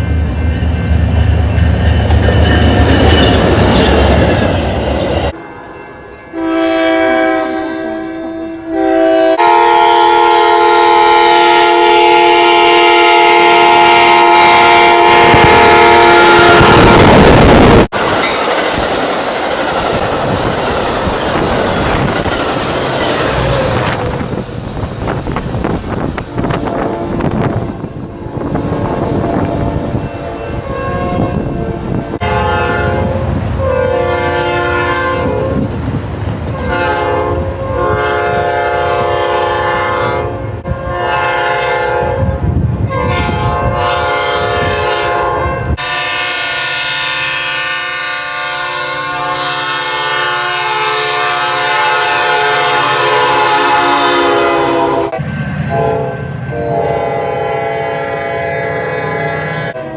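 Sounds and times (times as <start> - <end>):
passing train rumble: 0.0 - 59.9
locomotive air horn blasts: 6.3 - 17.8, 26.3 - 27.5, 28.1 - 35.6, 36.6 - 59.9.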